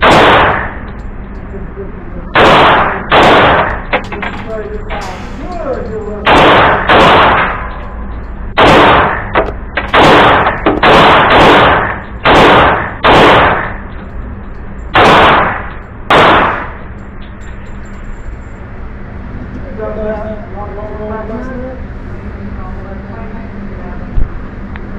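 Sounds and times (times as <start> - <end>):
pistol shots echoing: 0.0 - 0.8, 2.4 - 7.8, 8.6 - 13.9, 15.0 - 16.8.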